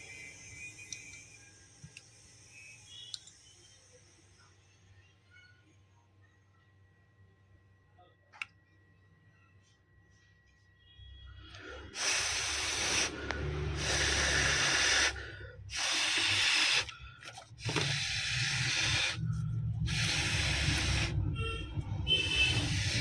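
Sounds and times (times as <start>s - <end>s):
loud hissing rushing noise: 17.8s - 23.0s.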